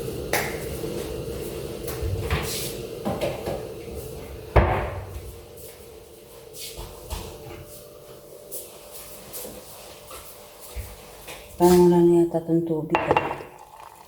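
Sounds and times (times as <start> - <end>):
household objects knocking and clattering: 13.0 - 13.6.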